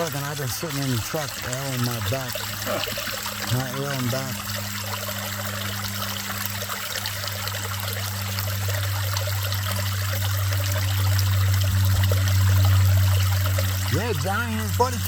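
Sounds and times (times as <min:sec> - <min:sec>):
creek water trickling: 0:00.0 - 0:15.0
steady low hum: 0:00.0 - 0:15.0.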